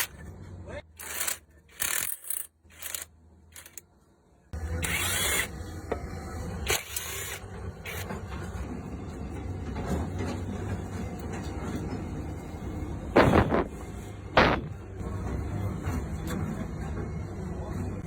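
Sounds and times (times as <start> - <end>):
engine knocks: 13.2 - 15.0
vehicle engine running: 13.2 - 15.0.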